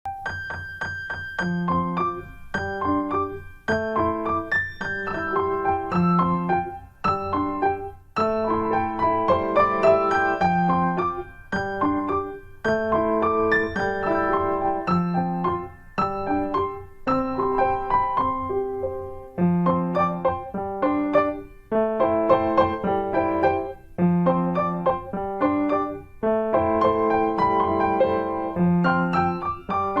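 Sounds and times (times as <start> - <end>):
gentle piano melody: 0.1 - 30.0.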